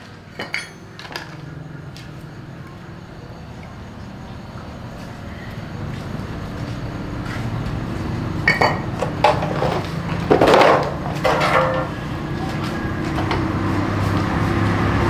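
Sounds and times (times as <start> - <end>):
kitchenware clinking: 0.3 - 1.6, 8.0 - 13.8.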